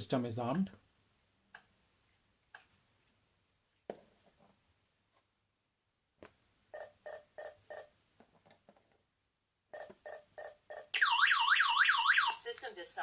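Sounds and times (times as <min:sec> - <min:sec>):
alarm siren warbling: 0:11.0 - 0:12.4.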